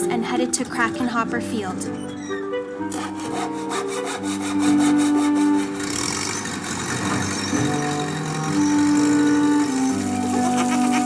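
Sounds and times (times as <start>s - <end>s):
background music with held notes: 0.0s - 11.0s
hand saw cutting wood: 2.9s - 11.0s.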